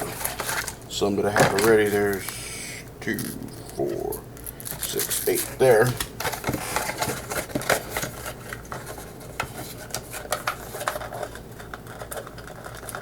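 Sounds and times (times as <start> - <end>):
card packs clicking and crinkling: 0.0 - 2.4, 4.4 - 13.0.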